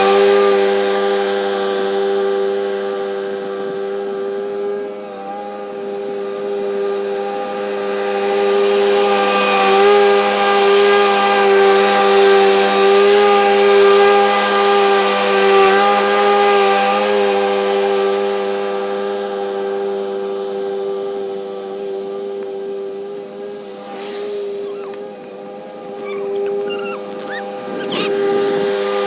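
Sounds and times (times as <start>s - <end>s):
small engine whining: 23.0s - 29.0s.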